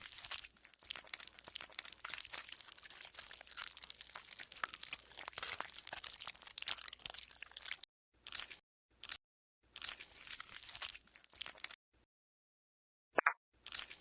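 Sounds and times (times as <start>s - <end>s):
slime squelching and crackling: 0.0s - 8.6s.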